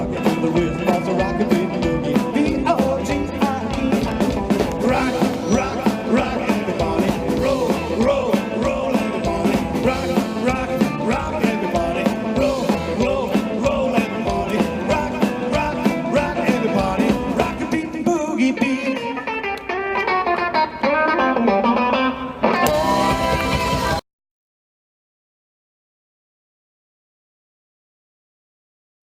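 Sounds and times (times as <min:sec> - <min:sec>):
steady drum beat: 0:00.0 - 0:18.1
electric guitar playing: 0:00.0 - 0:24.0
rockabilly band playing: 0:00.0 - 0:24.0.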